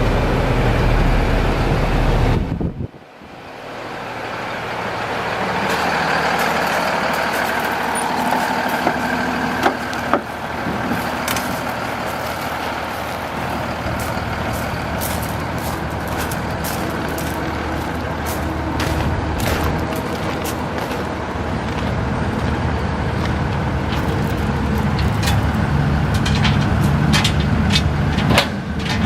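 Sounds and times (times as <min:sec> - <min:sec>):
diesel truck engine running: 0:00.0 - 0:29.0.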